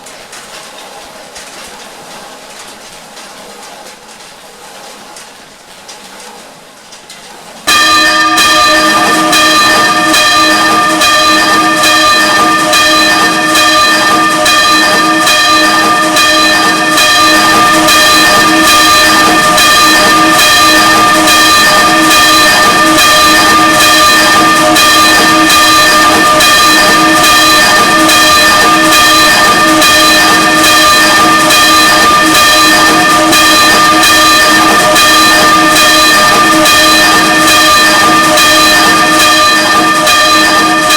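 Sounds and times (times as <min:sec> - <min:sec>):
church bell ringing: 0:07.7 - 0:40.9.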